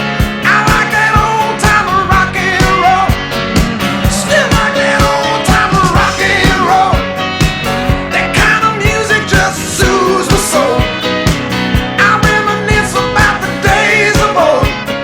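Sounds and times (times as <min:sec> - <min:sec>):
steady drum beat: 0:00.0 - 0:14.9
rock and roll song: 0:00.0 - 0:15.0
man singing: 0:00.4 - 0:07.2, 0:08.1 - 0:11.0, 0:11.9 - 0:15.0.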